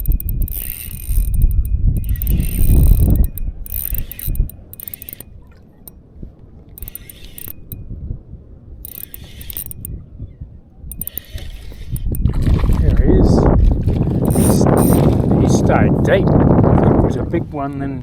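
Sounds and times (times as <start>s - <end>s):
fishing reel winding: 0.0s - 5.9s, 6.7s - 7.8s, 8.8s - 10.0s, 10.9s - 12.4s, 14.2s - 15.1s
wind buffeting microphone: 0.0s - 18.0s.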